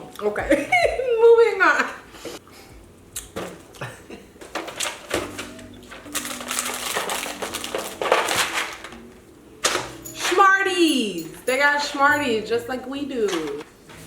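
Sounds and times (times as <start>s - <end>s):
snack packaging crinkling: 4.8s - 9.0s.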